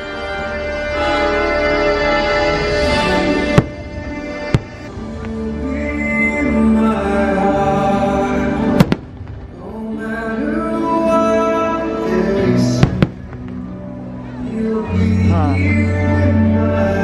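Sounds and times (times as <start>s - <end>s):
loud soundtrack music: 0.0s - 17.0s
firework bangs: 3.3s - 5.6s, 8.7s - 10.2s, 12.8s - 13.7s.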